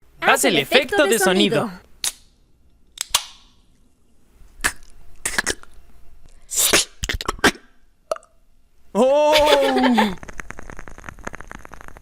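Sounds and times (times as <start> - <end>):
mouth clicks and pops: 4.6 - 8.4, 10.2 - 12.0
mouth hiss: 6.5 - 7.2.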